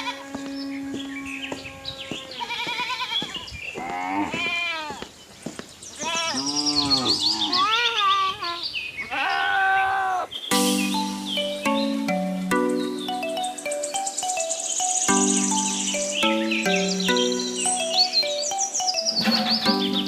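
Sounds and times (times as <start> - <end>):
livestock bleating: 0.0 - 5.0, 6.0 - 8.3.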